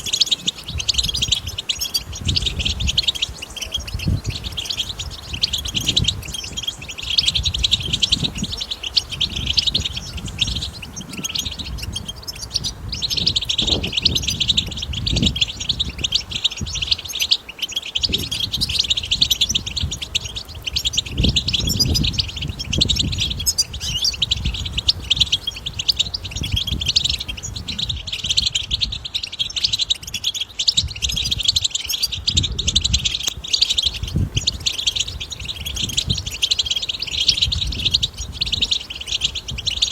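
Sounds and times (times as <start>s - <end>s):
goldfinch twittering song: 0.0s - 39.9s.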